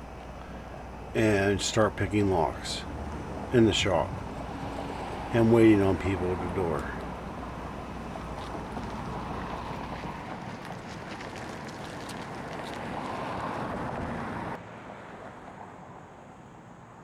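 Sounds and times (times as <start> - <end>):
quiet hum: 0.0 - 12.3.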